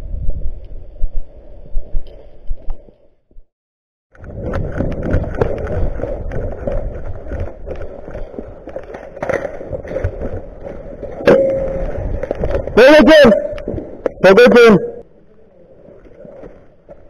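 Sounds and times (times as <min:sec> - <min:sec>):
low rumble: 0:10.2 - 0:14.2.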